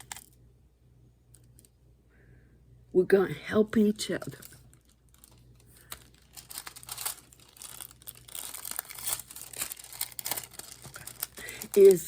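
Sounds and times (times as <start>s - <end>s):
paper rustling and crinkling: 4.2s - 12.0s.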